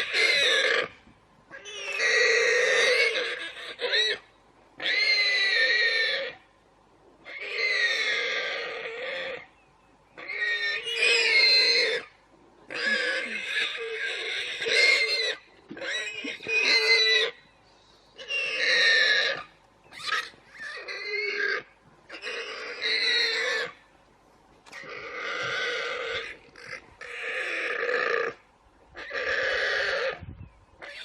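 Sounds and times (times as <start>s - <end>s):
animal squealing: 0.0s - 0.9s, 1.5s - 4.2s, 10.2s - 12.1s, 12.7s - 17.4s, 18.2s - 23.8s, 24.8s - 28.4s, 29.0s - 30.2s, 30.8s - 31.0s.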